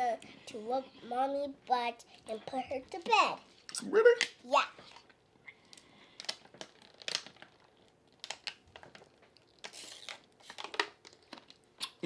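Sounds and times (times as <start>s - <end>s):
crinkling rustle: 4.8s - 11.6s
eating clicks and smacks: 5.0s - 12.0s.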